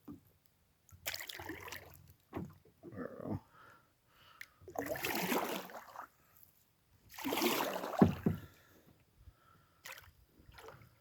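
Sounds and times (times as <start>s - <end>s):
paddle sloshing through water: 7.1s - 8.7s.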